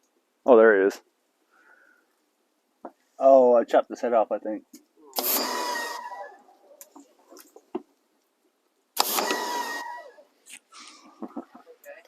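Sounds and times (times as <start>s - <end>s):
motor whine: 5.2s - 6.3s, 9.0s - 10.2s.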